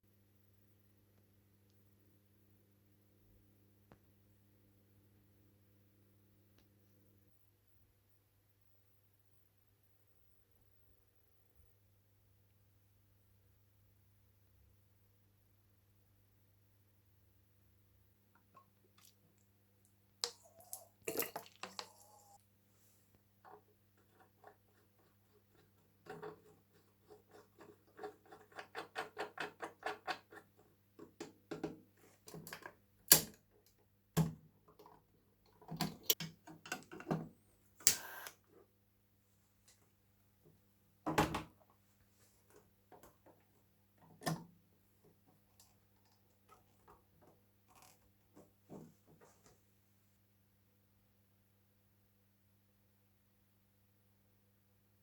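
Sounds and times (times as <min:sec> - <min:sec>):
faint low hum: 0:00.0 - 0:28.6.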